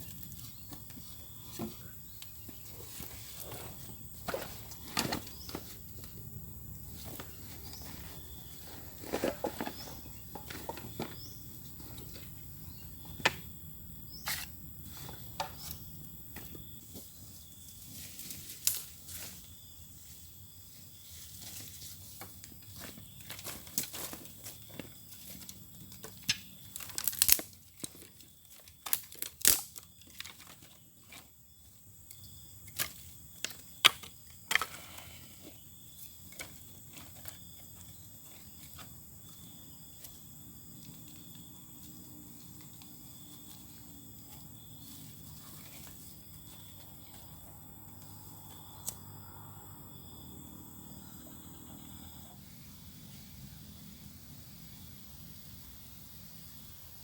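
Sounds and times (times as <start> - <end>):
crinkling: 22.5 - 31.4.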